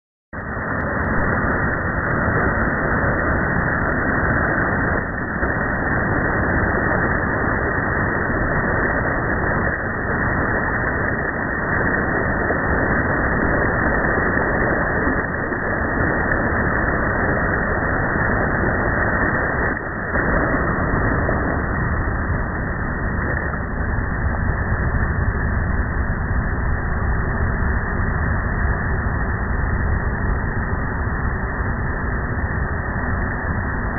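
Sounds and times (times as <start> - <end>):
ocean waves breaking on beach: 0.4 - 25.0.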